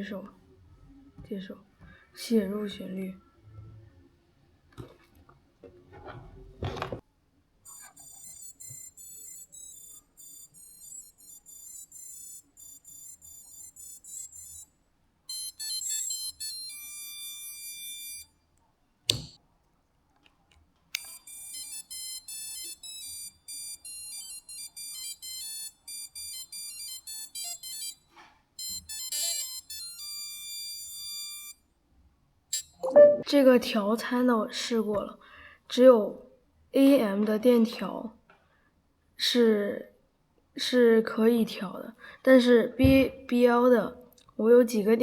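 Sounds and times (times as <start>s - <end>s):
electronic beep melody: 32.8s - 33.3s.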